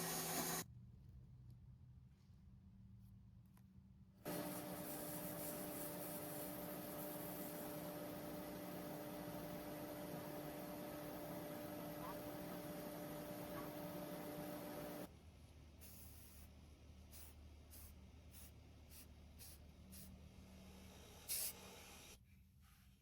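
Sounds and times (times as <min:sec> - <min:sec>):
electric motor machine whirring: 0:00.0 - 0:00.6.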